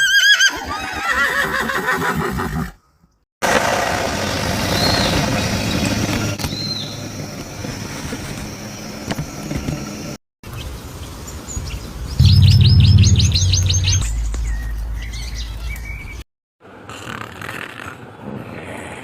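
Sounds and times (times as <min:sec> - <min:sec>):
low steady hum: 0:12.2 - 0:15.6.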